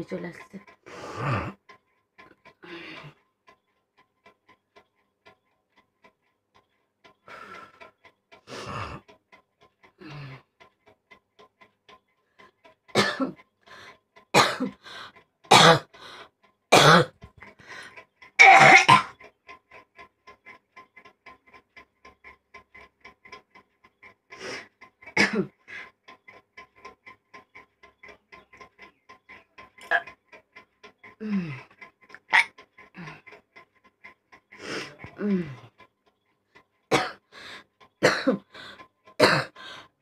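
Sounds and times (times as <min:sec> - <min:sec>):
person coughing: 0:13.0 - 0:13.4, 0:14.4 - 0:14.7, 0:15.5 - 0:15.9, 0:16.8 - 0:17.1, 0:18.4 - 0:19.1, 0:25.2 - 0:25.5, 0:36.9 - 0:37.2, 0:38.0 - 0:38.4, 0:39.2 - 0:39.6
person retching: 0:16.7 - 0:17.1, 0:18.4 - 0:19.1, 0:29.8 - 0:30.1, 0:32.2 - 0:32.5.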